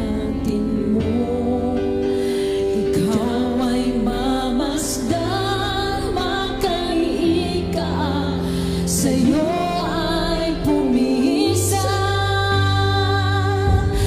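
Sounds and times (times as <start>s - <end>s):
sustained keyboard chords: 0.0s - 14.0s
woman singing worship song: 0.0s - 14.0s.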